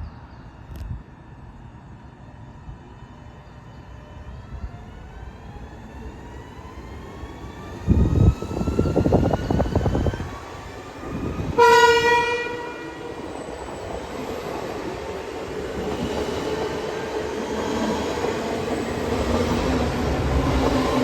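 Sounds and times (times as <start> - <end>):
train running noise: 0.6 - 21.0
train horn blast: 11.6 - 13.2.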